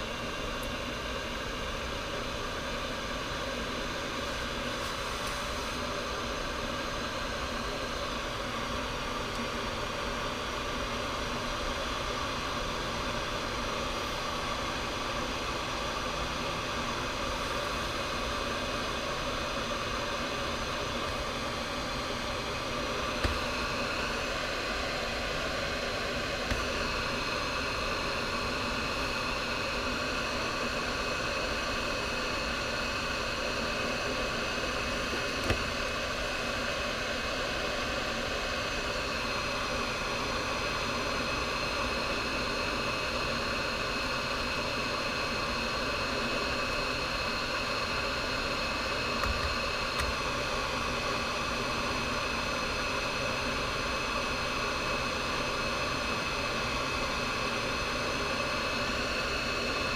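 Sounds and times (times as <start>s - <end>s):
faint high fan whine: 0.0s - 59.9s
hot air gun hissing: 21.4s - 29.2s.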